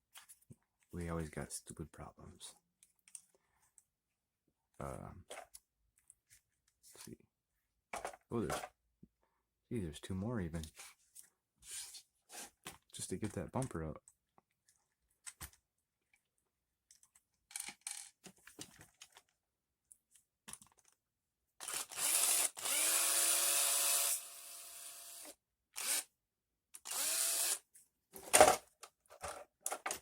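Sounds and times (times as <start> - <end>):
cordless drill motor whining: 21.6 - 26.0, 26.8 - 27.6
clicks of screws and plastic: 28.2 - 30.0.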